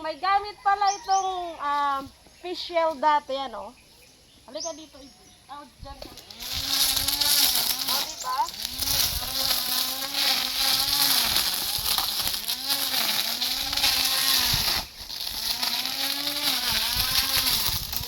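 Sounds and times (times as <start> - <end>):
hiss of grass cutting: 5.8 - 18.0
lawn mower engine running: 6.0 - 18.0.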